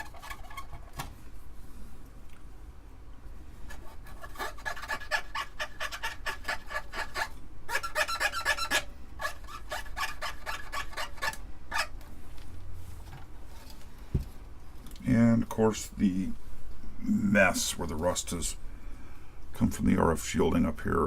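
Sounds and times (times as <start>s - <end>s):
scrubbing strokes on metal: 0.0s - 0.9s, 3.7s - 11.9s.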